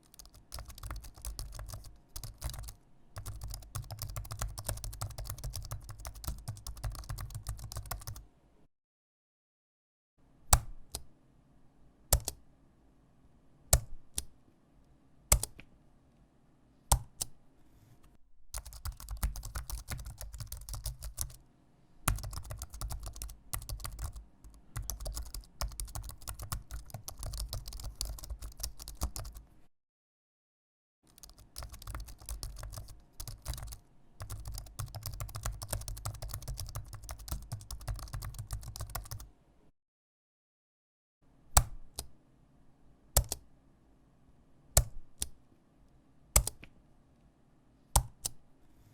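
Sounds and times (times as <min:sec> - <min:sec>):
mechanical keyboard typing: 0:00.0 - 0:08.2, 0:12.2 - 0:12.4, 0:18.6 - 0:21.4, 0:22.1 - 0:29.4, 0:31.1 - 0:39.3, 0:43.2 - 0:43.4, 0:46.4 - 0:46.7.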